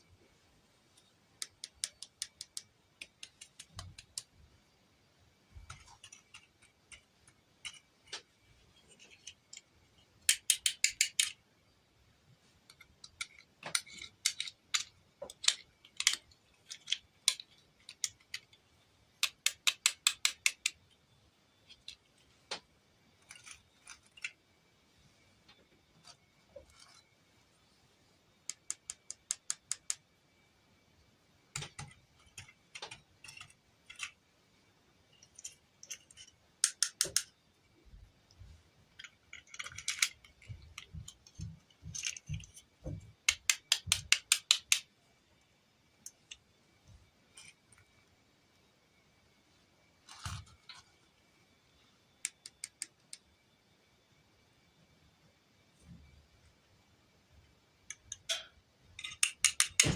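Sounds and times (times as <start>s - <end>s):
plastic toy pieces clicking: 1.4s - 4.3s, 10.2s - 11.4s, 12.7s - 18.6s, 19.2s - 21.0s, 28.5s - 30.0s, 31.5s - 34.2s, 35.2s - 37.3s, 38.9s - 42.6s, 43.3s - 44.9s, 52.2s - 53.2s, 59.0s - 59.9s.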